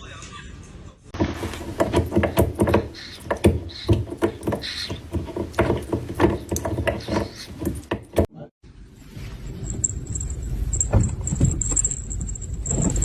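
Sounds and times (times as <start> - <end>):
rapid knocks and clatters: 1.2 - 8.3.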